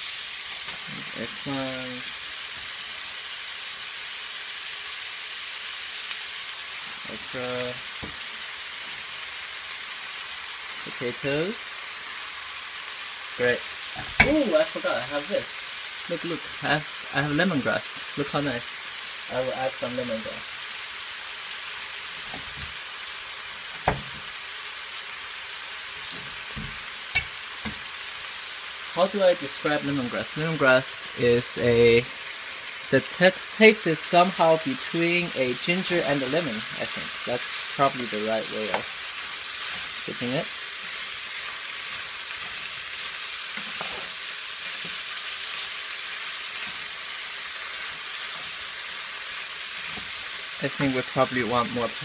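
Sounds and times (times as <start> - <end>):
food sizzling in a hot pan: 0.0 - 52.0
knocks on a pan: 23.8 - 24.2.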